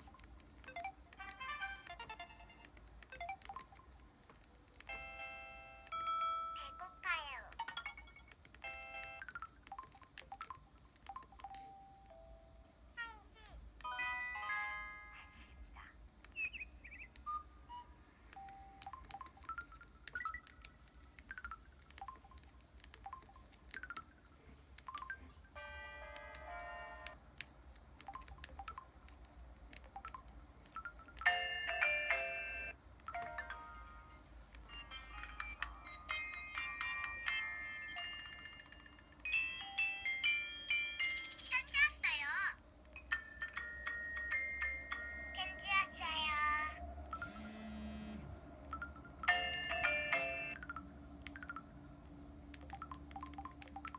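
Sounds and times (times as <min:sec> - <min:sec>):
electronic phone tones: 0:00.0 - 0:04.0, 0:04.9 - 0:12.7, 0:16.4 - 0:24.2, 0:24.9 - 0:27.2, 0:43.0 - 0:51.8.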